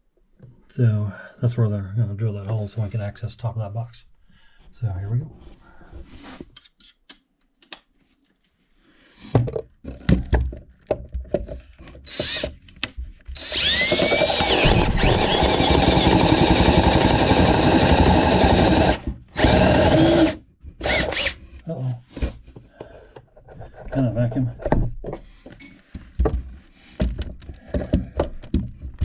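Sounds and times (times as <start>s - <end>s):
power drill boring wood: 12.1s - 12.5s, 13.3s - 21.4s.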